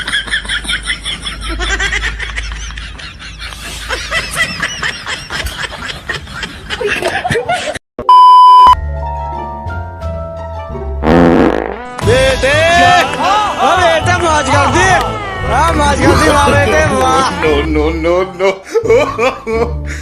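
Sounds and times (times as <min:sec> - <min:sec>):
people snickering and laughing: 0:00.0 - 0:07.8, 0:15.9 - 0:20.0
loud steady beep: 0:08.1 - 0:08.8
background music with bass line: 0:08.8 - 0:18.2.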